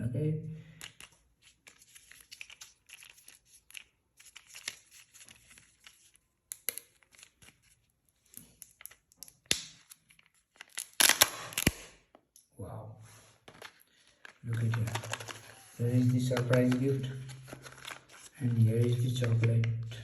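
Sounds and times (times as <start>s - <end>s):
foil wrapper tearing and crinkling: 9.3s - 12.0s.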